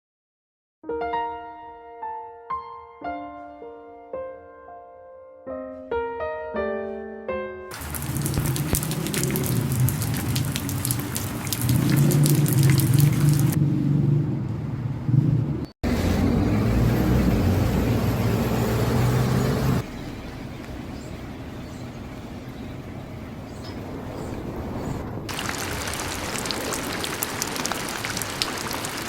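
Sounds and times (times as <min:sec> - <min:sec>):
dripping clicks: 0:07.7 - 0:13.6, 0:25.3 - 0:29.0
rain rushing: 0:07.7 - 0:13.6, 0:23.0 - 0:29.0
passing cars humming: 0:07.7 - 0:29.0.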